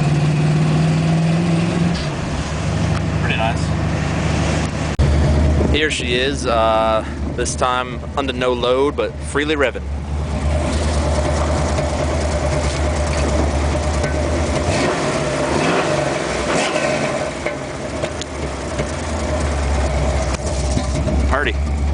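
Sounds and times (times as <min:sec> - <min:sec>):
car engine idling and revving: 0:00.0 - 0:21.9.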